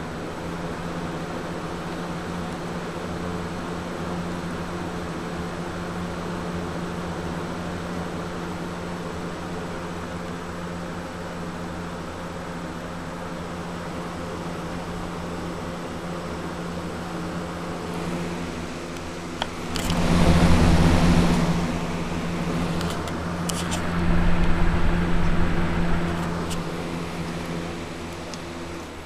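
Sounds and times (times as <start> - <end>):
electric fan motor hum: 0.0 - 29.0
rush of moving air: 17.9 - 28.6.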